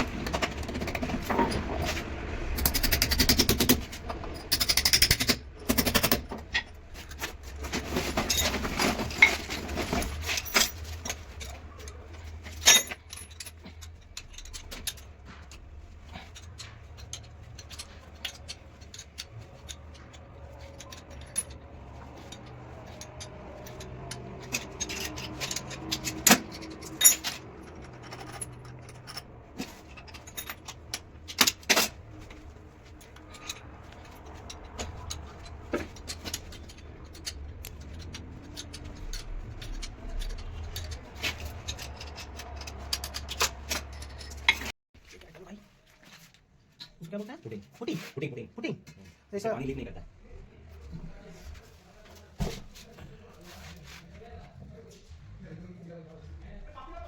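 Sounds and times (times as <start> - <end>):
tools clattering and scraping: 0.0 - 45.2, 50.8 - 55.4.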